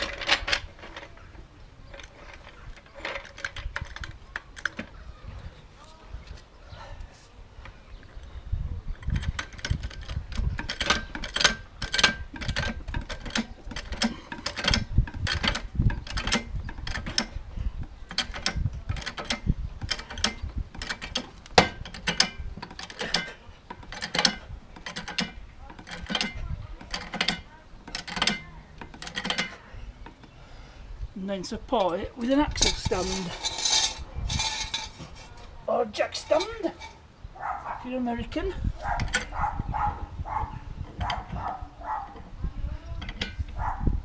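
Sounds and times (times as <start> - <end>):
jack pump clicks and clanks: 1.9 - 5.0, 9.0 - 30.3, 31.8 - 35.3, 38.8 - 39.9, 42.9 - 43.7.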